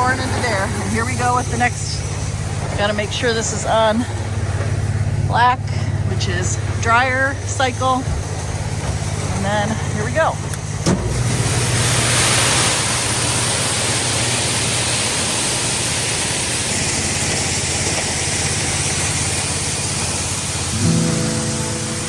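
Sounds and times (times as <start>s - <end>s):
low steady hum: 0.0s - 16.8s, 20.4s - 22.0s
grain dryer air rush: 0.0s - 22.0s
music: 20.7s - 22.0s.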